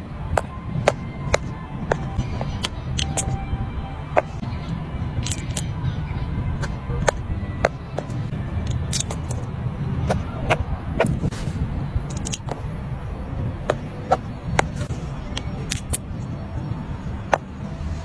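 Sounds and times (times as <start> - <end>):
low hum: 0.0 - 18.0
fidget toys clicking and snapping: 0.8 - 3.4, 5.2 - 5.7, 6.6 - 9.5, 10.1 - 12.6.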